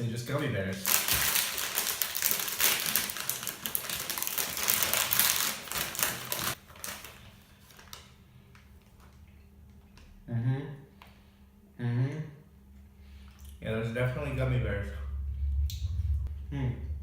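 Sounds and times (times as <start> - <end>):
plastic wrapper crinkling: 0.8 - 9.1.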